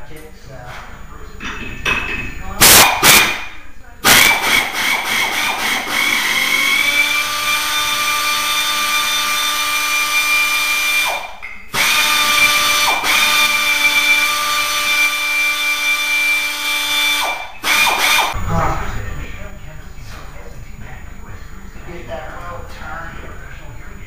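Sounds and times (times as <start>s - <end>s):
power wrench whining: 4.0s - 18.4s.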